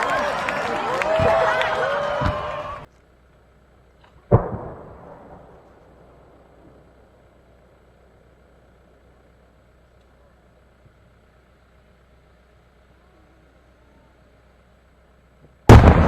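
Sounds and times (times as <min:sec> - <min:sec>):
faint low rumble: 0:00.0 - 0:16.0
firework bang echo: 0:04.2 - 0:06.9, 0:15.7 - 0:16.0.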